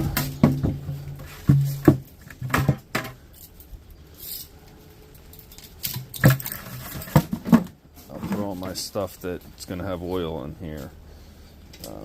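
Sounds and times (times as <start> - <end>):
parts knocking and clattering: 0.0 - 4.5, 5.2 - 8.8.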